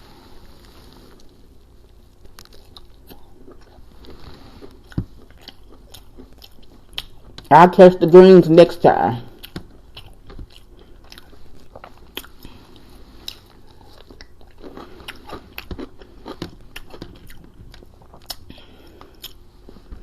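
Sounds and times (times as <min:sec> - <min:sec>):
crunchy clicks of fried food: 0:01.9 - 0:03.2
chewing and mouth smacking: 0:02.2 - 0:07.5, 0:09.3 - 0:19.8.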